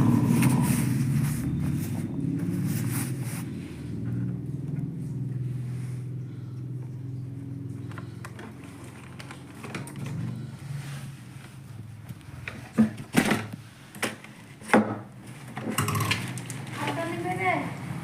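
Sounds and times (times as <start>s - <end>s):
steady low hum: 0.0s - 13.9s
hard objects knocking and clattering: 12.6s - 16.7s.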